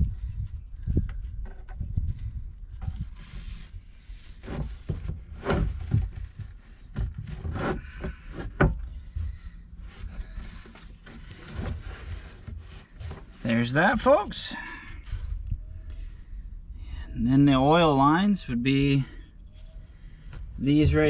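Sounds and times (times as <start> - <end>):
strap rubbing on plastic: 2.8 - 13.7.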